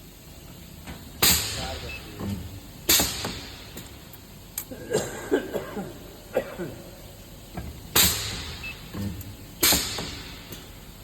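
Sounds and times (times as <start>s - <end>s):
low steady hum: 0.0s - 11.0s
welding machine bursts with hiss: 1.2s - 2.1s, 7.9s - 8.8s, 9.6s - 10.5s.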